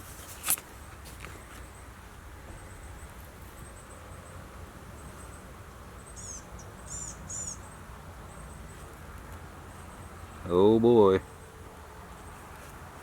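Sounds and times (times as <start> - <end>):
low outdoor background: 0.0 - 13.0
bird chirps: 6.0 - 8.9.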